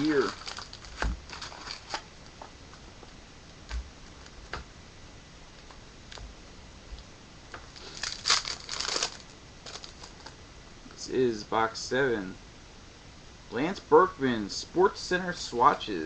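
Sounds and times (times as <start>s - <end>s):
packaging crinkling and tearing: 0.0s - 2.1s, 7.7s - 10.4s.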